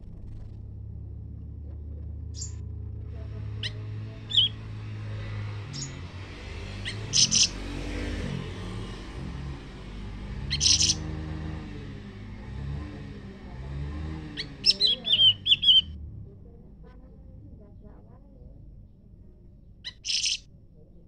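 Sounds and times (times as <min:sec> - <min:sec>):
low steady rumble: 0:00.0 - 0:07.6, 0:08.4 - 0:21.0
songbirds chirping: 0:01.1 - 0:16.0, 0:18.7 - 0:20.5.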